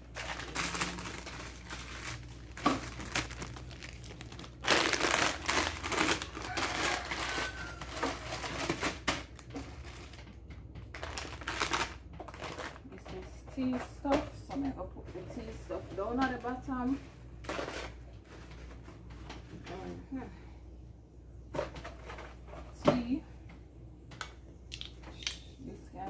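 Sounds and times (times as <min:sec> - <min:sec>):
plastic packaging crinkling: 0:00.0 - 0:10.3, 0:10.9 - 0:12.9.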